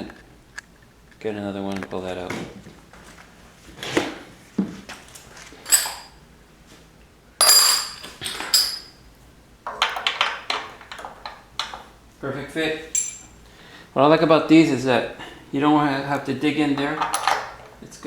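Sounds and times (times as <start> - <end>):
metal hand tools clinking: 5.7 - 6.2, 7.4 - 9.0, 12.9 - 13.4, 16.7 - 17.8.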